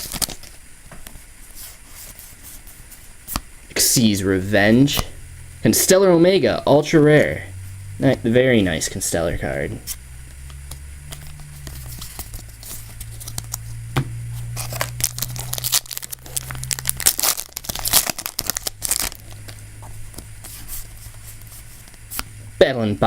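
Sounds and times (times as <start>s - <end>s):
foil wrapper tearing and crinkling: 0.0s - 0.6s, 14.5s - 19.6s
low steady hum: 0.0s - 23.0s.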